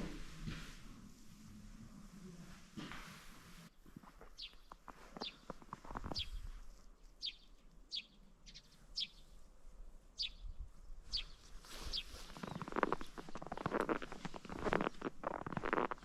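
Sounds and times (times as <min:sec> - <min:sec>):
footsteps crunching on snow: 0:02.8 - 0:07.0, 0:11.4 - 0:16.0
small bird chirping: 0:04.2 - 0:09.4, 0:10.2 - 0:14.7.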